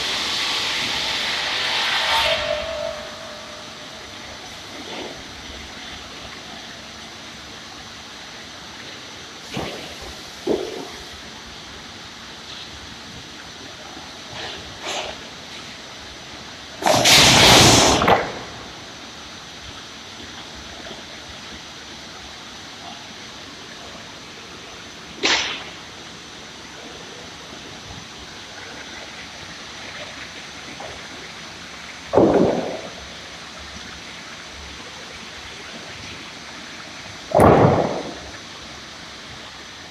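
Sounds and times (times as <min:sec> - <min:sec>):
loud machine bursts: 0:00.0 - 0:05.0, 0:16.8 - 0:18.8
sawing machine humming: 0:00.0 - 0:05.5.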